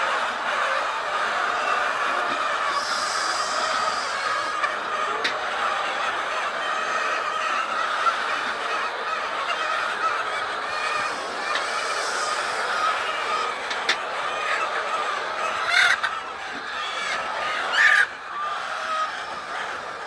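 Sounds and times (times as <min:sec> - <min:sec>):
hens clucking: 0:00.0 - 0:20.0.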